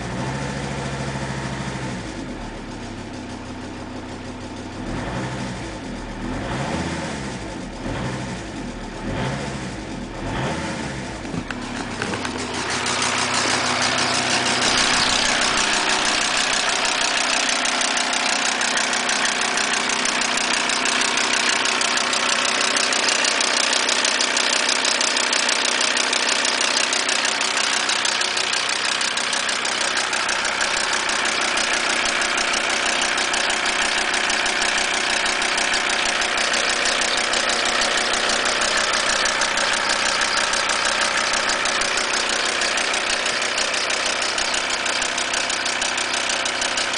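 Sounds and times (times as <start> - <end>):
diesel engine clatter: 0.0 - 46.9
fast regular ticking: 11.5 - 46.9.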